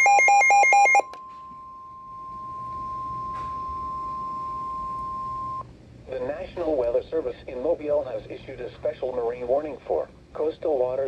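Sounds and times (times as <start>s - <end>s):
steady warning alarm tone: 0.0s - 5.6s.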